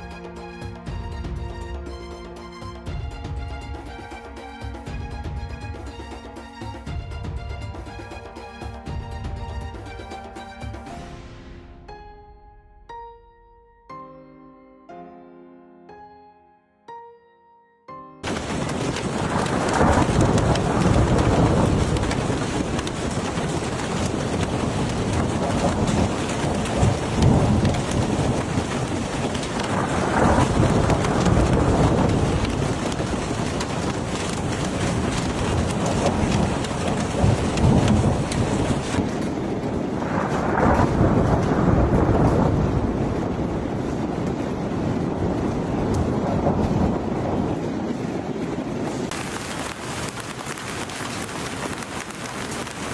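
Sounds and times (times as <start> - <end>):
hail and rain pelting down: 0.0 - 11.2, 18.2 - 52.9
rumbles of thunder: 18.2 - 52.9.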